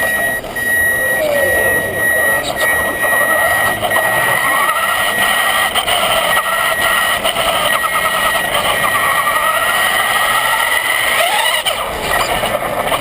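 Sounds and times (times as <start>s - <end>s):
electric motor and gears whining: 0.0s - 13.0s.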